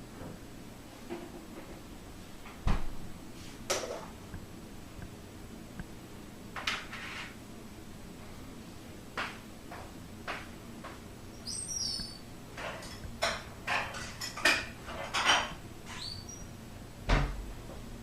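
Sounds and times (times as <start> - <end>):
high chirps: 11.3 - 12.3.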